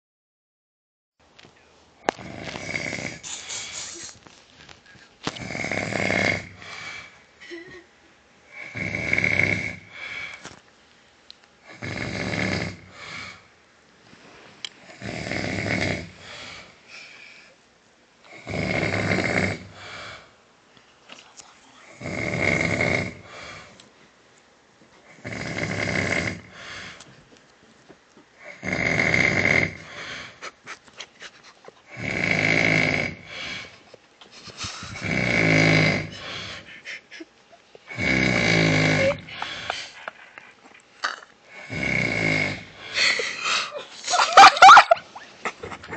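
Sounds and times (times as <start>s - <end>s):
man snoring: 2.1s - 4.1s, 5.3s - 7.2s, 8.5s - 10.3s, 11.6s - 13.5s, 14.8s - 16.8s, 18.3s - 20.3s, 21.8s - 23.7s, 25.1s - 27.0s, 28.4s - 30.4s, 31.9s - 33.7s, 34.9s - 36.8s, 37.9s - 39.9s, 41.5s - 43.2s.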